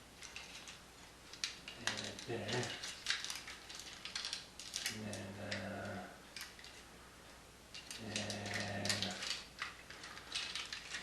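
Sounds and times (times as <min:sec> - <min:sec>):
plastic toy parts clicking: 0:07.8 - 0:11.0.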